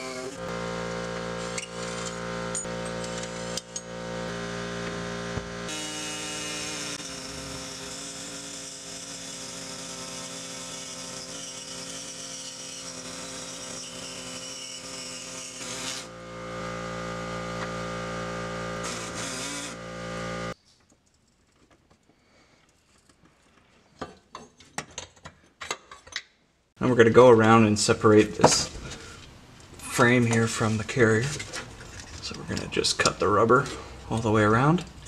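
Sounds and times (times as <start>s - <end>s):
power tool cutting metal: 0.0s - 20.6s.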